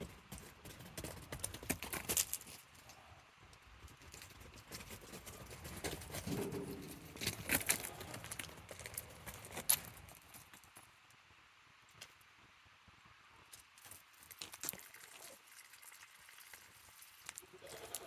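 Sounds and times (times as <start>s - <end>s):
goat hooves clattering: 0.0s - 11.0s.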